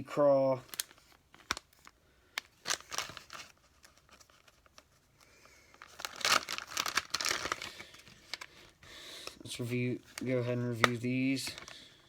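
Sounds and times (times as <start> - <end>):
plastic packaging crinkling: 0.6 - 12.0.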